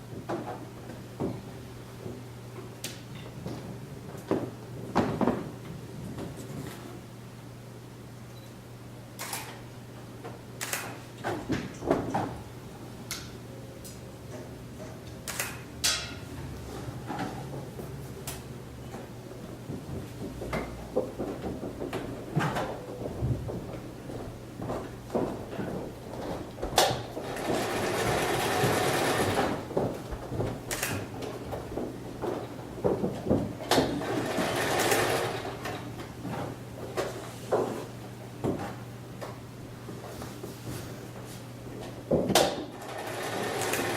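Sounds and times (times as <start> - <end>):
steady low hum: 0.0 - 42.3
objects knocking and clattering: 3.1 - 6.8, 11.2 - 12.5, 18.8 - 39.4
sharp click: 10.6 - 11.0, 15.3 - 16.0
sewing machine running: 27.2 - 29.7, 34.0 - 35.6, 42.7 - 43.9.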